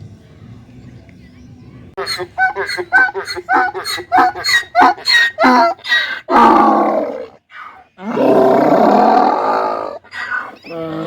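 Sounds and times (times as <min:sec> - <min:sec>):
donkey braying: 0:02.0 - 0:07.4.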